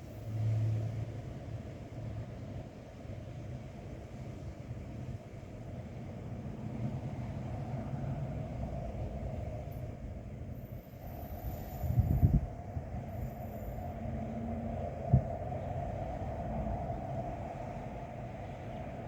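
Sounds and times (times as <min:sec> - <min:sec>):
wind buffeting microphone: 0:06.5 - 0:19.0.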